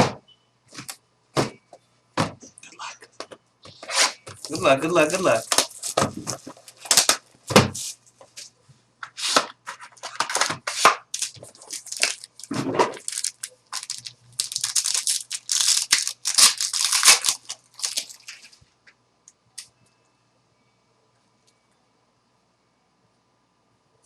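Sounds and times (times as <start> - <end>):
packaging ripping and crinkling: 3.9 - 7.2, 9.2 - 18.5.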